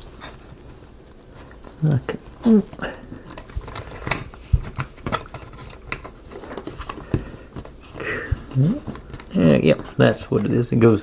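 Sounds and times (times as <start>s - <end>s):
soft handling rustle: 0.0s - 11.0s.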